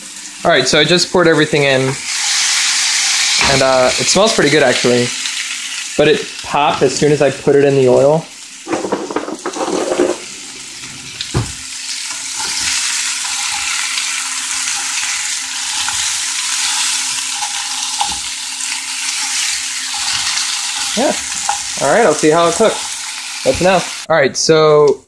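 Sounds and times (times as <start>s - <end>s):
potatoes sizzling in oil: 0.0s - 24.1s
knock on pan: 8.7s - 10.3s, 11.3s - 11.6s
scraping in frying pan: 8.7s - 11.2s.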